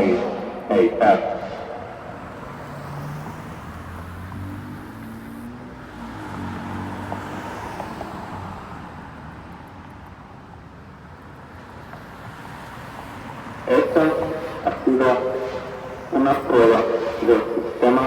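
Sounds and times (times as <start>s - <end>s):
vehicle engine passing: 0.0s - 7.7s
faint background traffic: 0.0s - 18.0s.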